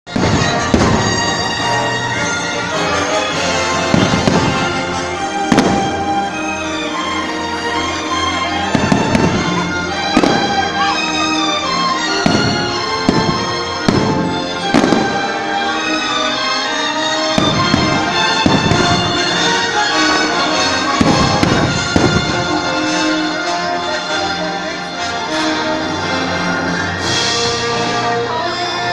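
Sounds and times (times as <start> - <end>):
fireworks bangs: 0.1 - 2.1, 3.7 - 6.6, 8.7 - 11.0, 12.0 - 16.0, 17.3 - 23.1
loud music: 0.1 - 28.9.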